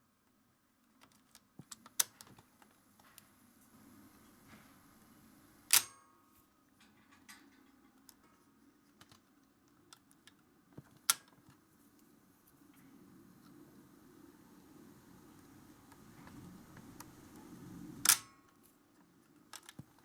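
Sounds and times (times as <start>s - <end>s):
sharp mechanical clicks: 5.7s - 6.0s, 18.0s - 18.4s
short metallic ring: 5.7s - 6.4s.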